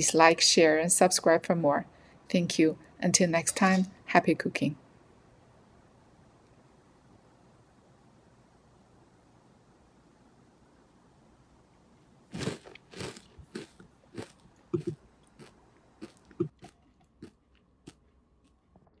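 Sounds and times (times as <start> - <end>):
chewing crunchy cabbage: 12.3 - 19.0.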